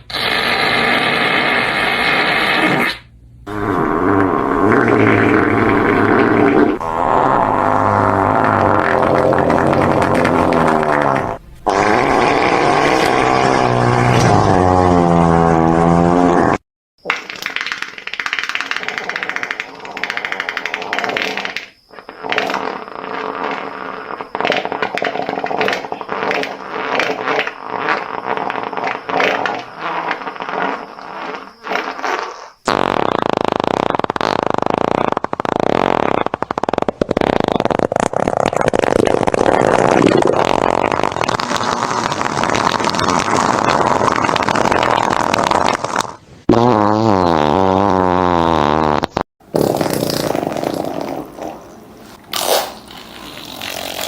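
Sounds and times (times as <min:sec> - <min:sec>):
fart sounds: 0:00.0 - 0:54.0.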